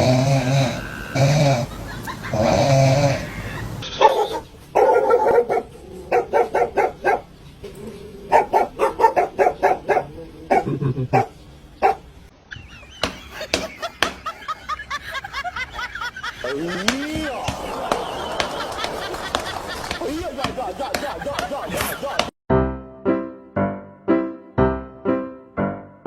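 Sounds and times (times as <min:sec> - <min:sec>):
dog barking: 0:04.0 - 0:07.3, 0:08.3 - 0:12.0.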